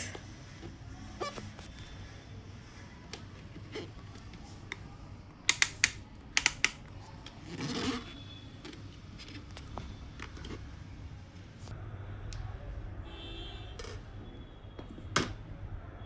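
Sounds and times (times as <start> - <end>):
hard plastic clicks: 5.4 - 6.9.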